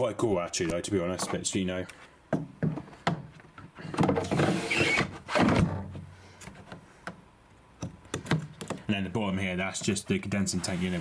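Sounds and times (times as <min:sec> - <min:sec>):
plastic panel sliding scrape: 0:03.9 - 0:05.8, 0:10.5 - 0:11.0.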